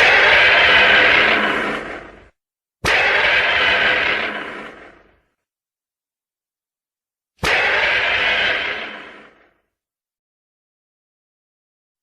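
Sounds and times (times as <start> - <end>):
monster roar: 0.0 - 5.2, 7.4 - 9.5.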